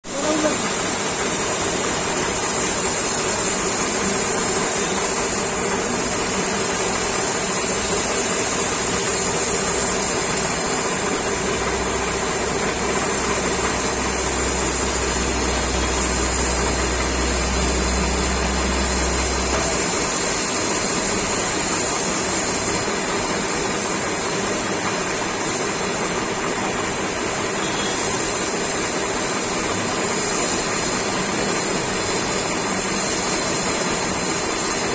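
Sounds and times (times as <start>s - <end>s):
glass polishing machine grinding: 0.1s - 22.0s.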